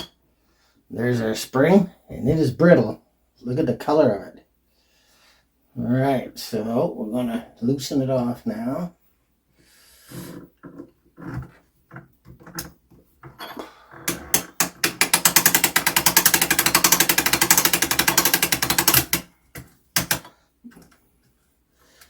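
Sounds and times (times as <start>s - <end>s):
knocks and clicks: 14.0s - 21.0s
rapid ratchet clicking: 14.4s - 19.3s.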